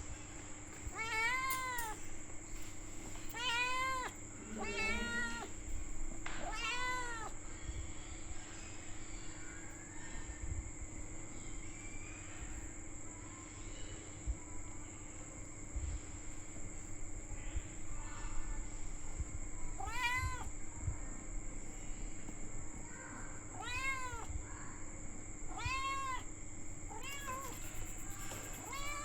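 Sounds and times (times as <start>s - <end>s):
kitten meowing: 3.3s - 5.5s, 6.4s - 7.3s, 19.8s - 20.5s, 23.6s - 24.3s, 25.5s - 26.2s, 26.9s - 29.0s.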